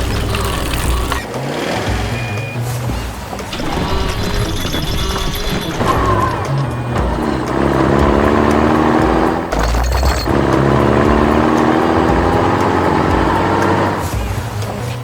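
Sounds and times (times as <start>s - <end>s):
toy vehicle engine whirring: 0.0s - 2.7s.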